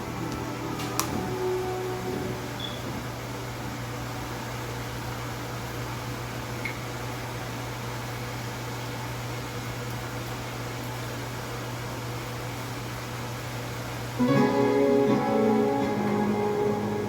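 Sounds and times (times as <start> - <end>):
music: 0.0 - 3.9, 14.2 - 17.0
appliance fan whirring: 0.0 - 17.0.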